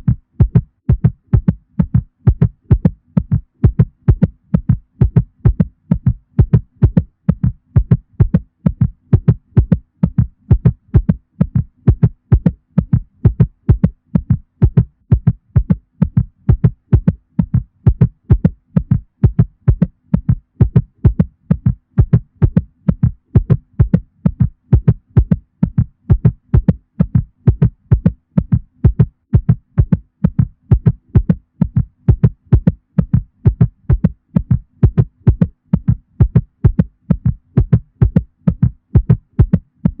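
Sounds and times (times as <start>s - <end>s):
heartbeat thudding: 0.0s - 40.0s.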